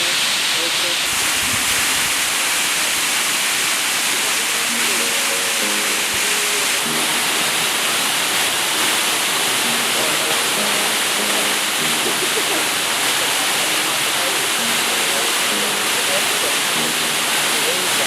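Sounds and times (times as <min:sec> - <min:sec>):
waterfall rushing: 0:00.0 - 0:18.0
faint voices: 0:04.0 - 0:18.0.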